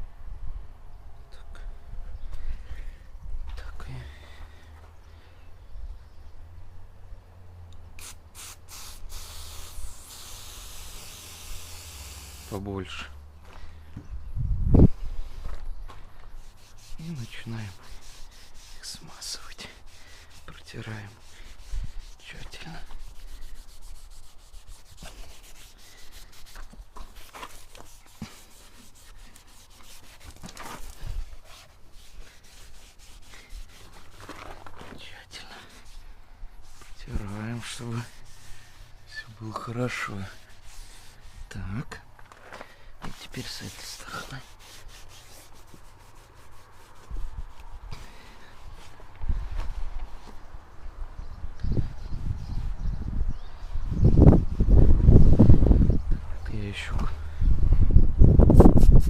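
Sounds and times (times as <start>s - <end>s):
aerosol can spraying: 8.0s - 12.6s, 23.0s - 30.5s
cloth wiping rubber seals: 16.4s - 35.0s, 35.6s - 41.6s, 43.0s - 49.0s.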